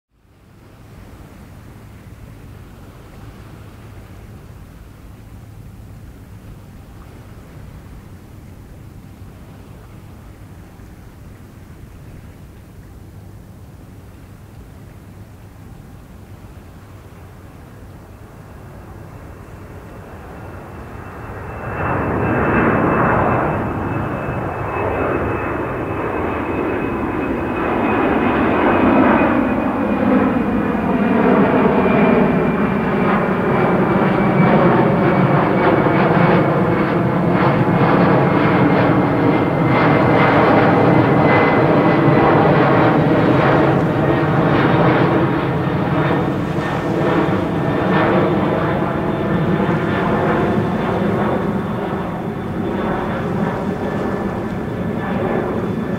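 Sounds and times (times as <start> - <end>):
jet airliner taking off: 16.8 - 55.9
high engine whine falling in pitch: 17.7 - 55.9.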